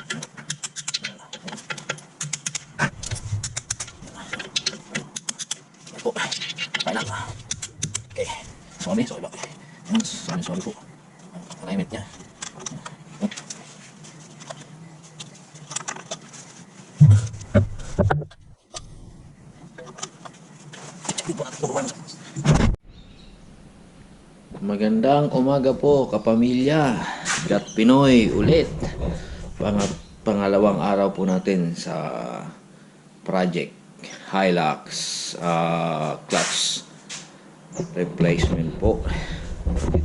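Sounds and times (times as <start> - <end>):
hand tools clicking on metal: 0.0 - 5.6, 6.3 - 8.1
metallic clicking of tools: 7.4 - 8.1
heavy knocks: 17.0 - 18.3.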